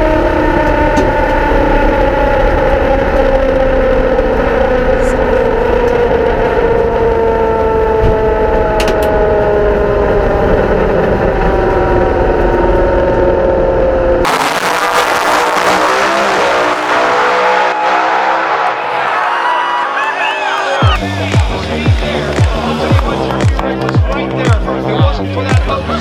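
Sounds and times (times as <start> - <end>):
race car engine droning: 0.0 - 26.0
sudden loud rushing noise: 14.2 - 19.5.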